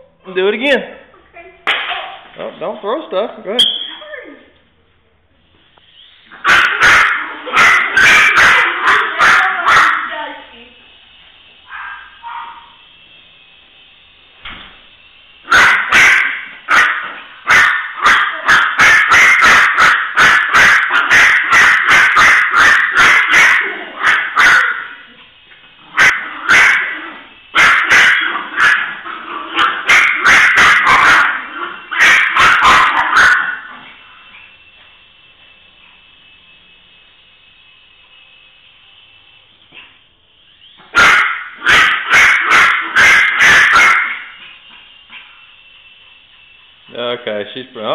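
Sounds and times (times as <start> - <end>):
small dog barking: 6.3 - 10.2, 11.7 - 12.8, 15.5 - 25.1, 25.9 - 33.8, 40.9 - 44.4.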